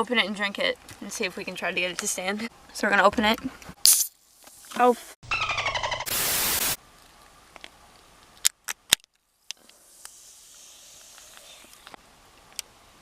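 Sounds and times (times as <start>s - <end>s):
soda can hiss: 6.1s - 6.8s, 9.4s - 12.0s.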